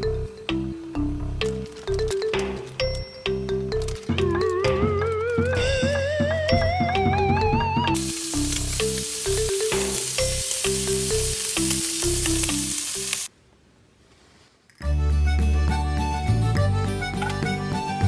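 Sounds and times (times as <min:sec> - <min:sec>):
food sizzling in a pan: 0:08.0 - 0:13.3
background music with bass line: 0:15.0 - 0:18.0.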